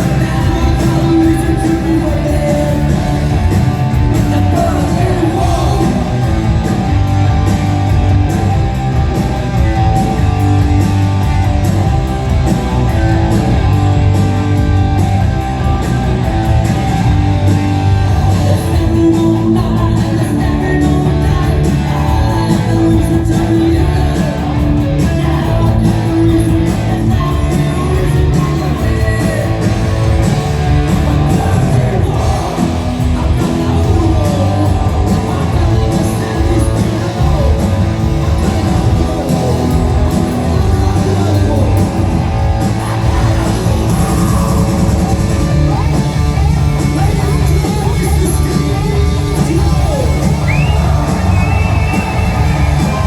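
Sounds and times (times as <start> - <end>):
person singing: 0.0 - 6.9, 17.9 - 53.0
bass guitar: 0.0 - 53.0
distorted electric guitars: 0.0 - 53.0
drums: 0.0 - 53.0.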